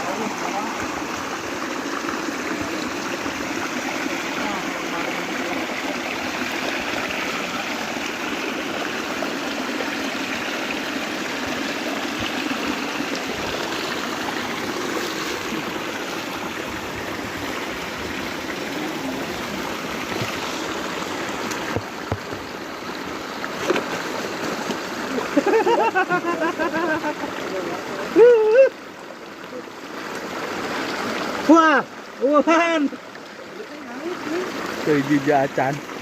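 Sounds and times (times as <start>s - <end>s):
stream water running: 0.0s - 36.0s.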